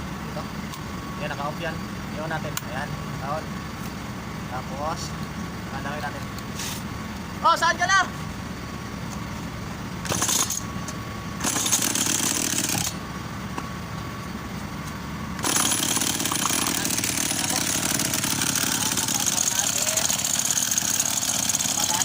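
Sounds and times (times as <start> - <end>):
chainsaw starting and running: 10.0 - 10.6, 11.4 - 13.0, 15.4 - 22.0.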